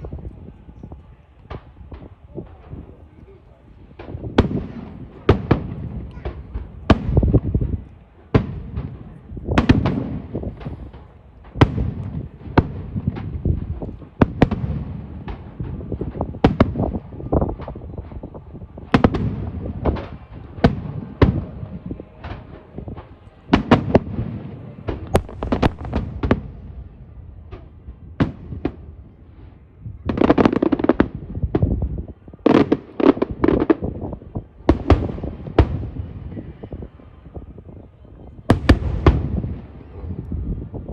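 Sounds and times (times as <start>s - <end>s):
fireworks shells bursting: 24.8s - 26.4s.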